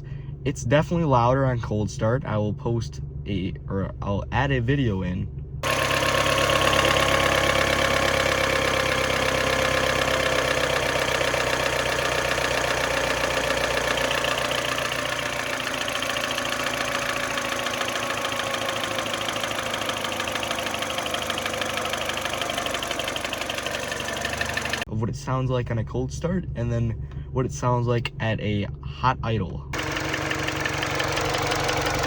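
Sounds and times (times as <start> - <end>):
car engine idling: 0.0 - 24.9, 29.8 - 32.0
engine piston knock: 5.6 - 24.9, 29.8 - 32.0.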